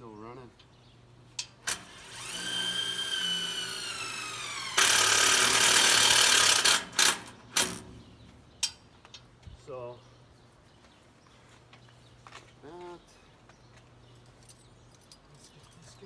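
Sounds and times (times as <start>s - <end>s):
impact gun motor whining: 1.6s - 8.0s.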